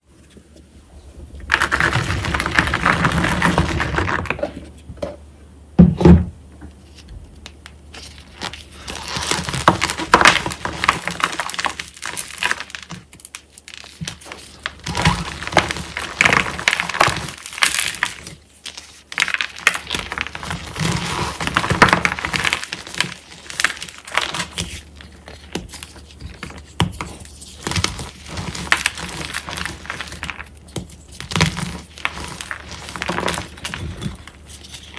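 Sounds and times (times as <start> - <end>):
chalk blocks crunching and crackling: 0.9 - 4.8, 6.8 - 34.9.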